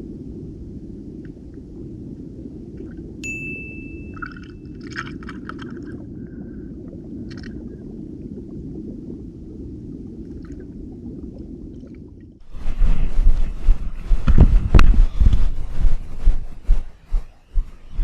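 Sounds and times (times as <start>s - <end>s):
underwater low rumble: 0.0s - 18.0s
thin high tone: 3.2s - 4.7s.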